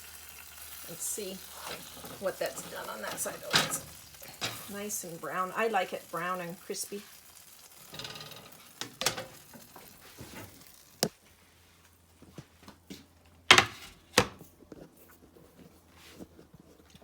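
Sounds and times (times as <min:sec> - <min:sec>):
utensils knocking on a frying pan: 0:01.6 - 0:04.8, 0:07.9 - 0:10.6.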